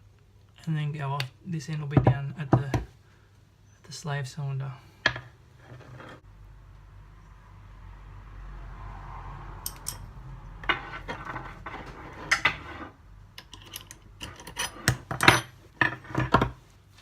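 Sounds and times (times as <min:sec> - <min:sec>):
metal tools clinking: 0:09.7 - 0:10.1, 0:13.4 - 0:16.0.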